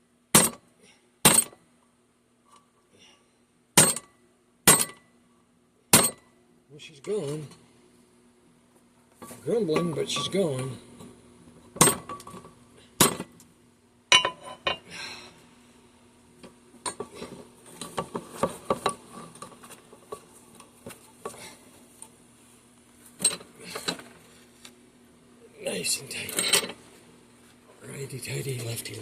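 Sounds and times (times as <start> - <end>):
metal-on-metal clanks: 14.1 - 14.8.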